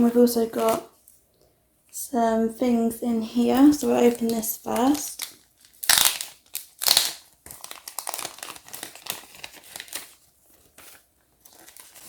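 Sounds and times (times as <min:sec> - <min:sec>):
packaging crinkling: 0:03.5 - 0:12.0
packaging tearing: 0:04.2 - 0:12.0.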